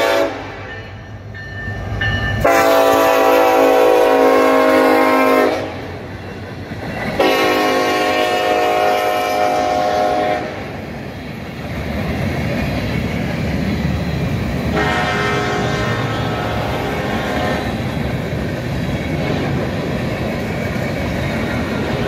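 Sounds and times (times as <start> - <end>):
locomotive air horn: 0.0 - 0.7, 2.4 - 5.9, 7.2 - 10.7, 14.7 - 17.8
train rumbling on rails: 0.0 - 22.0.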